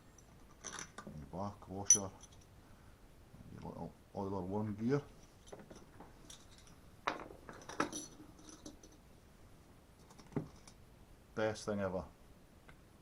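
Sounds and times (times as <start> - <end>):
small metal parts clinking: 0.2 - 1.1, 1.8 - 2.5, 5.4 - 9.0.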